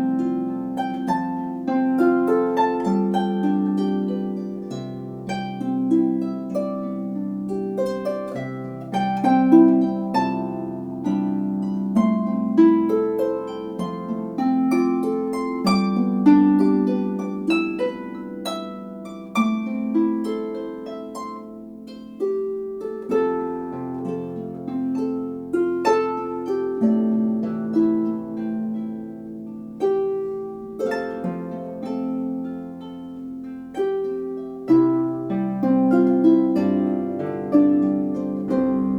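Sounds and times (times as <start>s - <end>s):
harp melody: 0.0s - 38.9s.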